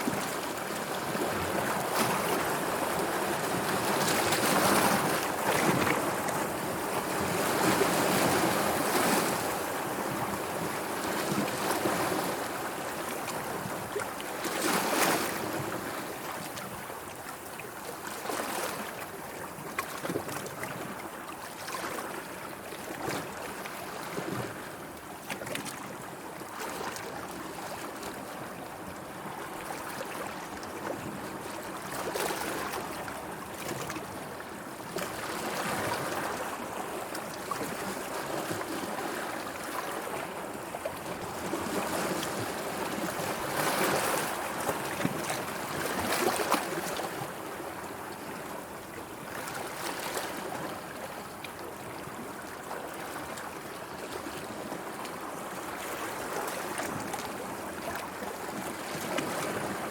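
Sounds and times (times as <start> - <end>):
sea water lapping: 26.6 - 59.9.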